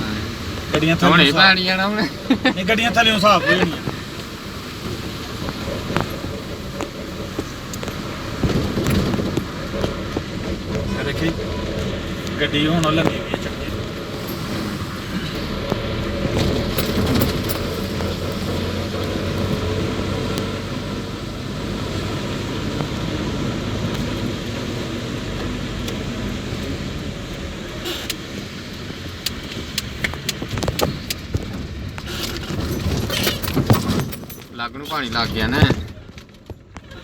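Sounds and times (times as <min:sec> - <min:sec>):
tyres hissing through water: 0:00.0 - 0:31.4
car engine running: 0:00.0 - 0:36.0.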